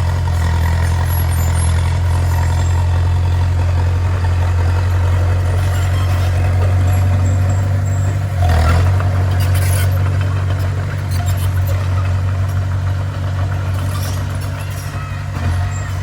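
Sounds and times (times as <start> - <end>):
bulldozer diesel engine droning: 0.0 - 16.0.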